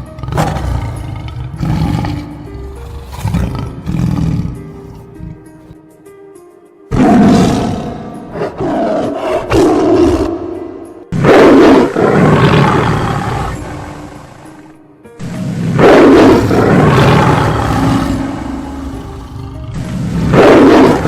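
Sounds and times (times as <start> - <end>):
tiger roaring and growling: 0.0 - 5.8, 6.9 - 21.0.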